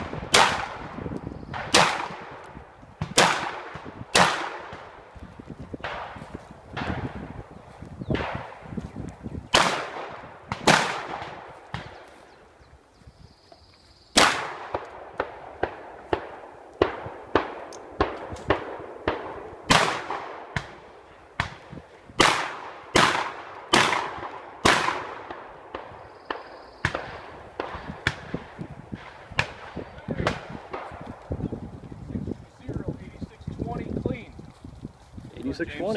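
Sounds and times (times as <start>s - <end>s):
shotgun shots echoing: 0.0s - 5.0s, 5.8s - 7.3s, 8.2s - 8.6s, 9.5s - 12.0s, 14.1s - 31.0s
faint sharp cracks and knocks: 14.6s - 19.2s.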